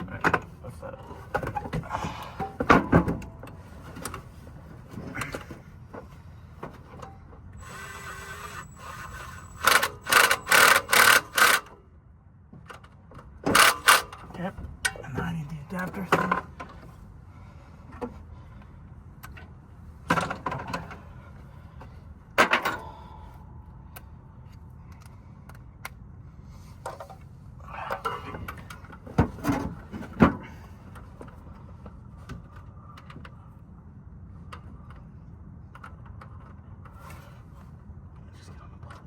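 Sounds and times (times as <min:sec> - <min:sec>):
steady low hum: 0:13.4 - 0:39.0.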